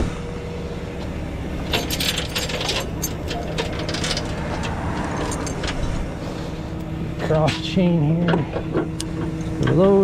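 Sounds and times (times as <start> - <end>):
truck engine idling: 0.0 - 10.0
chains clinking and rattling: 1.6 - 7.0.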